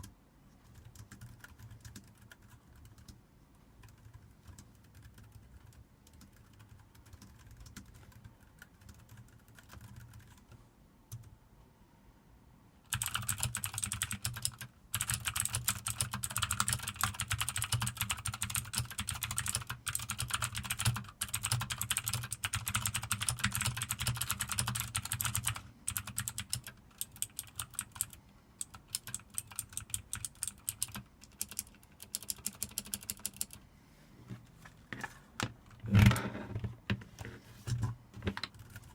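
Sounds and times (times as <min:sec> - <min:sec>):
soft keyboard typing: 0:00.0 - 0:03.2, 0:03.8 - 0:11.4, 0:12.9 - 0:33.6, 0:37.7 - 0:38.9
loud mechanical keyboard clicking: 0:03.8 - 0:10.4, 0:12.9 - 0:33.6.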